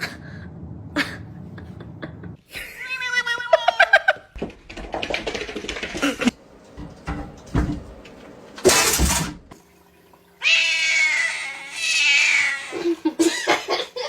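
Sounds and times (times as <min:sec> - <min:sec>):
cat meowing: 0:10.4 - 0:12.8.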